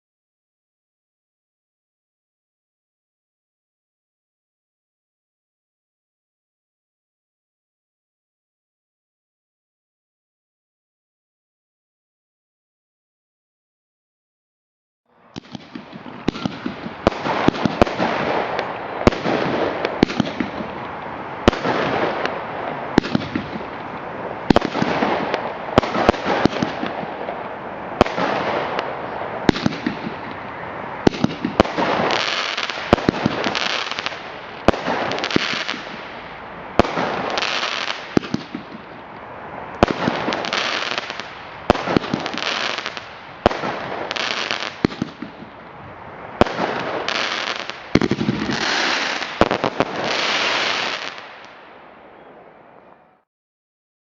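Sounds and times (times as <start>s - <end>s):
fireworks bangs: 15.1s - 45.7s, 46.3s - 53.1s
fireworks crackling: 15.1s - 53.0s.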